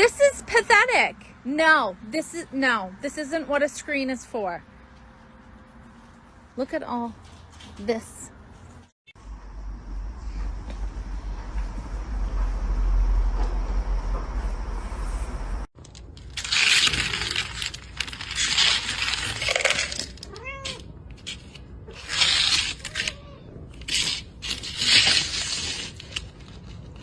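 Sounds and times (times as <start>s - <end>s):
cat meowing: 20.2s - 20.9s, 21.9s - 23.7s.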